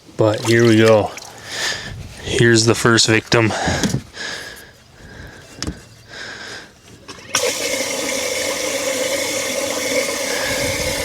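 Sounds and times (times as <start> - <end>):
quiet handling knocks: 5.4 - 6.0
pump running with water rushing: 7.1 - 11.0.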